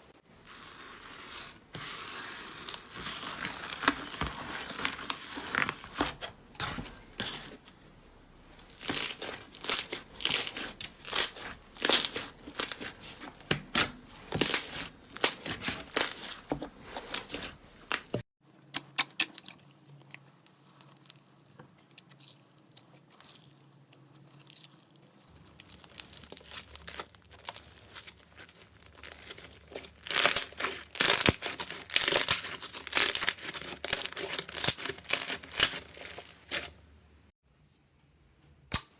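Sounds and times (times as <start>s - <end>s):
slime crackling and popping: 0.5s - 7.4s, 8.6s - 18.2s, 25.4s - 36.7s.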